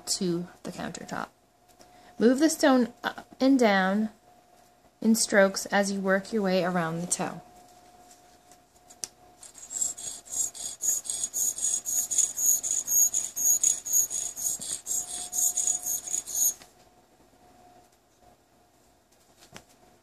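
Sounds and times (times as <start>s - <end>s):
sharpening stone scraping metal: 9.4s - 16.6s.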